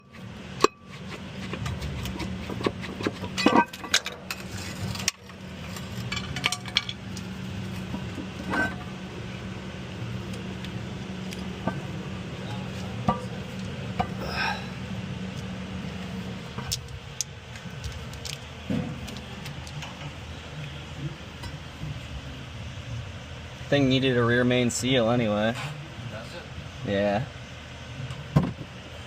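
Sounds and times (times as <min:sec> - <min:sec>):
metal tools clanking: 0:00.0 - 0:07.0, 0:07.8 - 0:09.0
steady low hum: 0:00.0 - 0:29.0.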